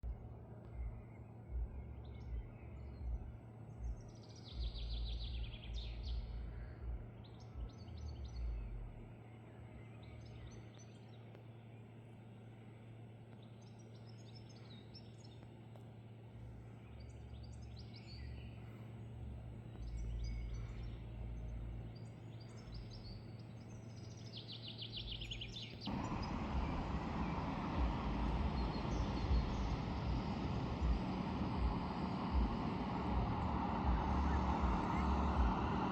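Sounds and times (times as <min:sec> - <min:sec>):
small birds chirping: 0:00.0 - 0:35.9
steady rushing noise: 0:25.9 - 0:35.9
wind gusts on microphone: 0:25.9 - 0:35.9.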